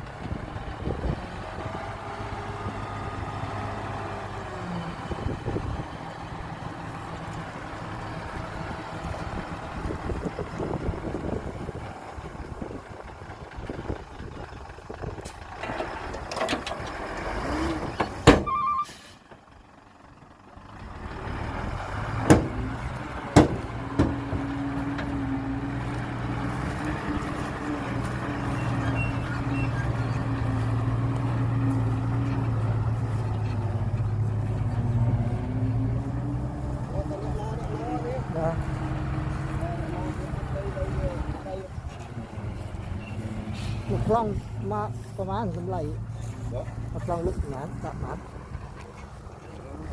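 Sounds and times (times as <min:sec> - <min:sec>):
dump truck engine running: 0:00.0 - 0:49.9
sharp knocks: 0:22.2 - 0:22.6, 0:23.3 - 0:24.5.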